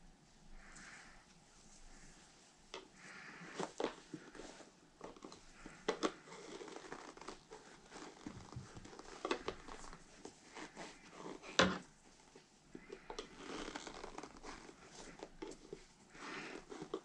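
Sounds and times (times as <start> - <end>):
rubber tire rubbing and scraping: 3.6 - 11.9, 12.9 - 17.0.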